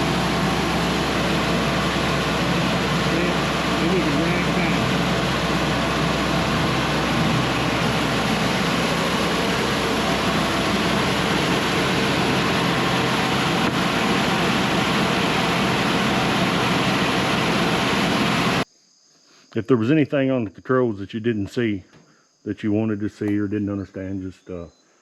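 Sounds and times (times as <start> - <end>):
low engine hum: 0.0 - 18.6
sawmill mechanical drone: 0.0 - 18.6.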